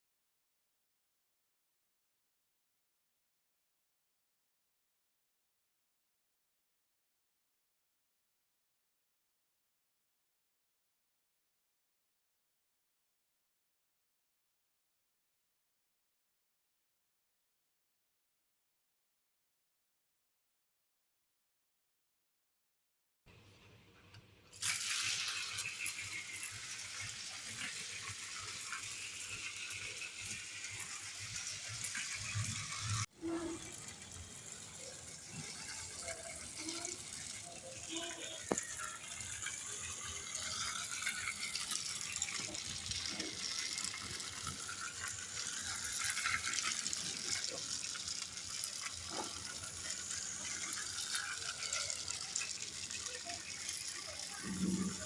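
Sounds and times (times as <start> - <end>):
toy train rattling on track: 24.6 - 55.0.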